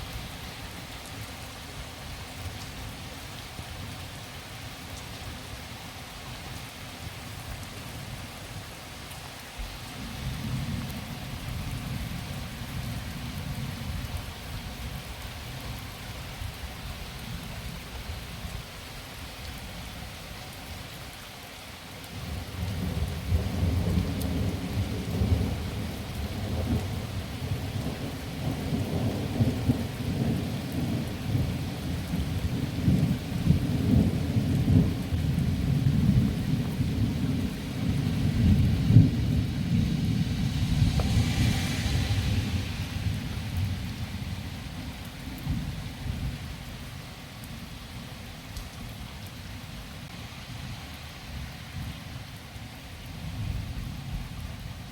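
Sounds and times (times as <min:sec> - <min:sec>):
steady rain hissing: 0:00.0 - 0:54.9
thunder rumbling: 0:22.2 - 0:46.4.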